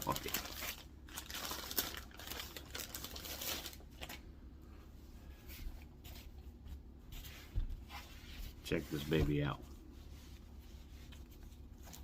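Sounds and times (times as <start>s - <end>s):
packaging rustling and crinkling: 0.0s - 4.2s.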